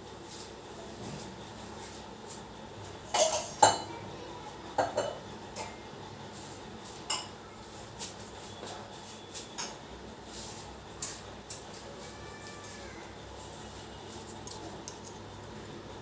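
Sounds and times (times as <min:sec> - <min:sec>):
metal utensils clinking: 0:03.1 - 0:03.8.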